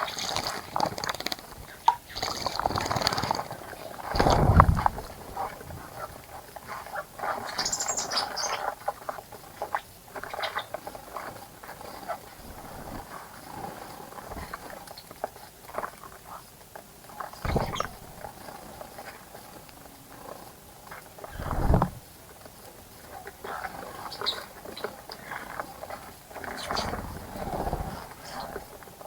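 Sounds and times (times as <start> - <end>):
wing flutters: 2.2 - 6.3, 17.5 - 18.5, 21.2 - 22.0
birds splashing in water: 4.1 - 6.1, 17.5 - 18.4
dull thump: 4.2 - 5.6.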